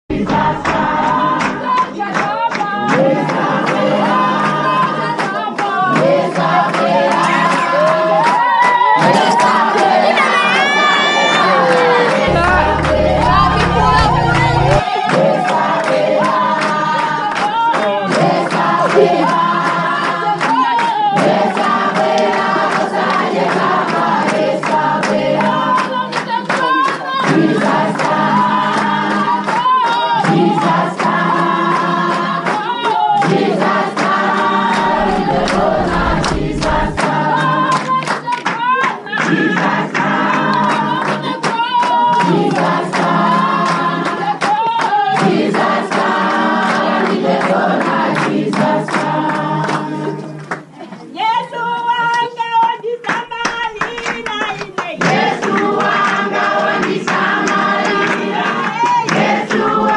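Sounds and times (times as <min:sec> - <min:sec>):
choir singing in harmony: 0:00.1 - 0:50.7, 0:53.6 - 0:59.9.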